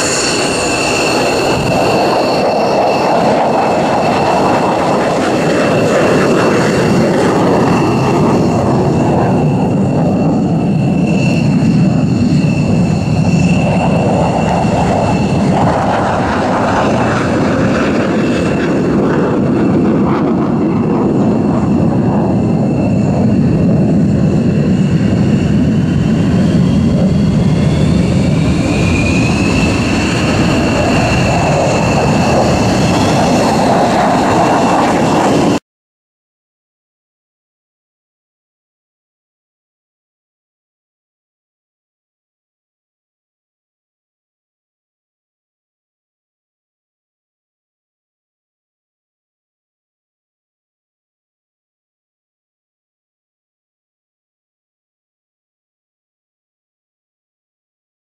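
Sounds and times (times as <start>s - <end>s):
high turbine whine: 0.0s - 35.6s
jet engine roar: 0.0s - 35.6s.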